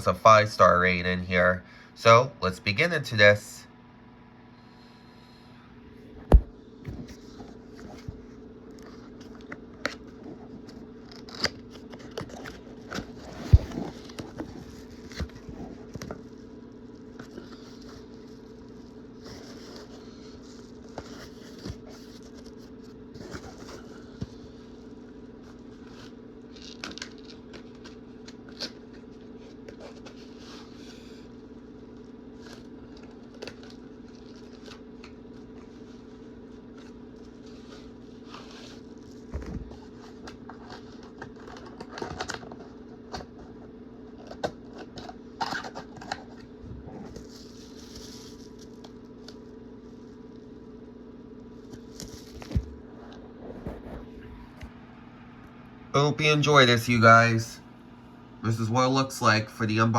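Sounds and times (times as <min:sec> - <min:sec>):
steady background hum: 0:00.0 - 0:59.9
packaging clicks and scrapes: 0:36.8 - 0:49.4.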